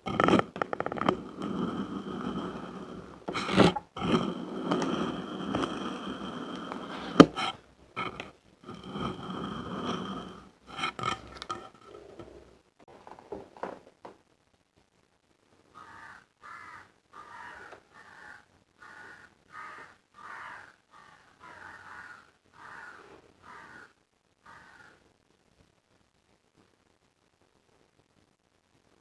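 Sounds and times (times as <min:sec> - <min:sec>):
sand scraping and crumbling: 0:00.0 - 0:12.5.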